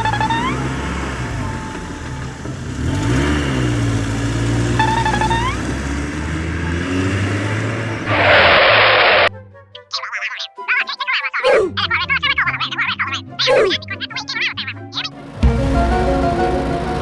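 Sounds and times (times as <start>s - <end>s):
cartoon vehicle engine: 0.0s - 17.0s
short rising squeaks: 8.1s - 9.3s.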